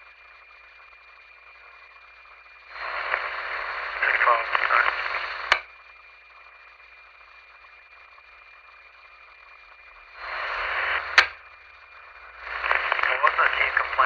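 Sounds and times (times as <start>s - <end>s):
radio channel hiss with tone: 0.0s - 14.0s
radio static burst: 2.6s - 6.6s, 7.3s - 14.0s
radio squelch click: 2.7s - 5.7s, 10.2s - 11.4s, 12.2s - 14.0s.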